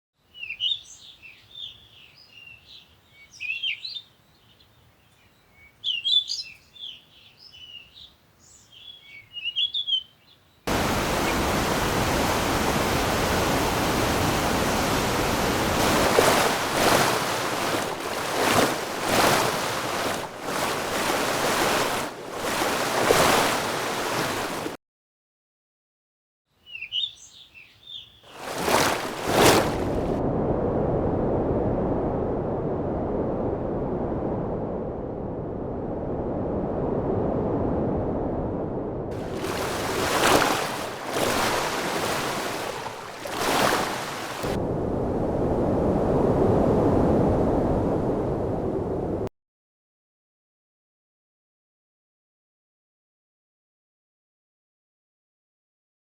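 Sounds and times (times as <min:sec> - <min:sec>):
songbirds chirping: 0:00.2 - 0:11.5, 0:26.5 - 0:29.8
surf waves surging: 0:10.7 - 0:24.8, 0:28.3 - 0:30.5, 0:39.1 - 0:49.3.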